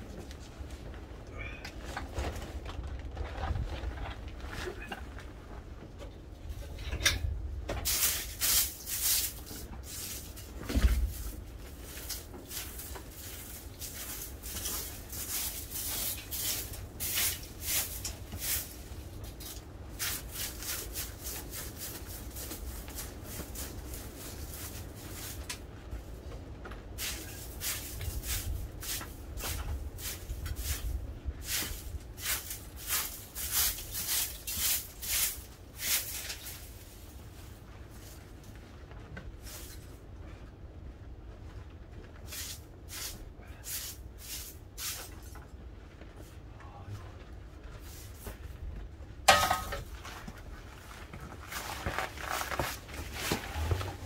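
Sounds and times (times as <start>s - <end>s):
low wind rumble on microphone: 0.0s - 8.8s, 9.6s - 34.0s
footsteps crunching snow: 27.0s - 37.4s, 49.3s - 54.0s.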